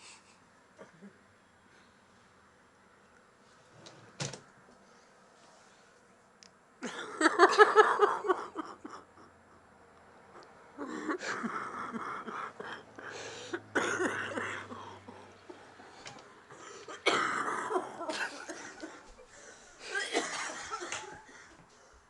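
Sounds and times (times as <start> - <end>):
person coughing: 13.4 - 15.2, 16.5 - 19.1, 19.8 - 21.2.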